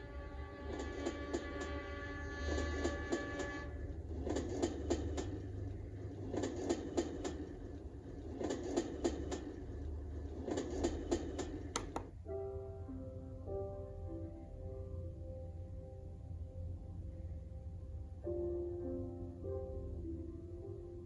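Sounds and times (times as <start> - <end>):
train horn chord: 0.0 - 3.8
train wheels clickety-clack: 0.7 - 11.8.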